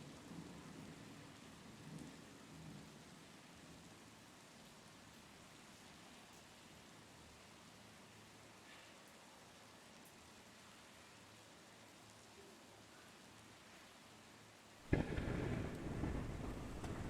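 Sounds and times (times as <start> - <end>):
rain hiss: 0.0 - 17.0
low thunder rumble: 14.9 - 17.0.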